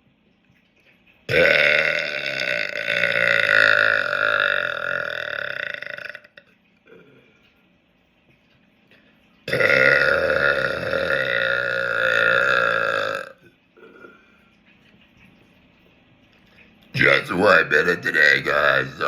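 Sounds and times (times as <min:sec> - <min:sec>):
man burping: 0:01.3 - 0:07.3, 0:09.5 - 0:14.3, 0:17.0 - 0:19.0.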